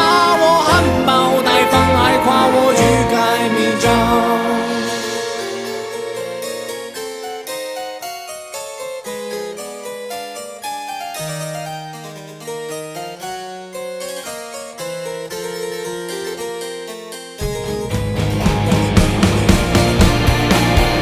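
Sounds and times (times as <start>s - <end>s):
band playing: 0.0s - 7.5s, 17.4s - 21.0s
keyboard playing quick notes: 0.0s - 8.0s.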